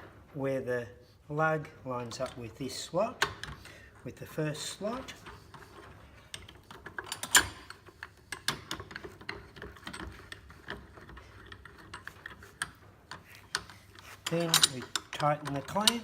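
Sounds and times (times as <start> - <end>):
winding mechanism clicking: 5.0 - 16.0.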